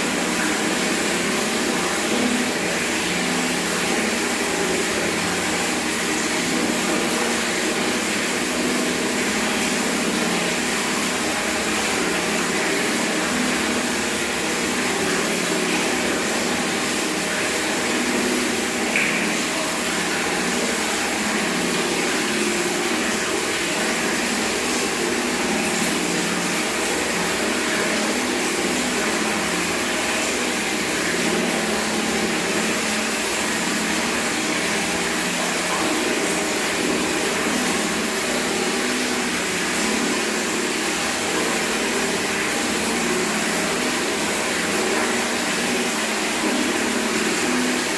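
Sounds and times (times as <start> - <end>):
tap water running into a bucket: 0.0 - 47.9.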